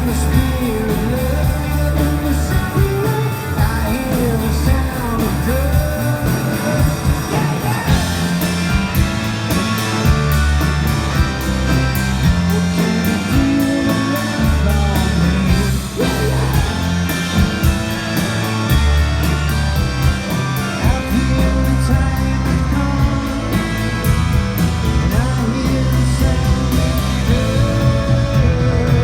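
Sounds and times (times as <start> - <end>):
person singing: 0.0 - 8.7, 12.2 - 17.1, 20.8 - 23.6, 25.0 - 29.0
fast cymbal beat: 0.0 - 22.4
rock band playing: 0.0 - 29.0.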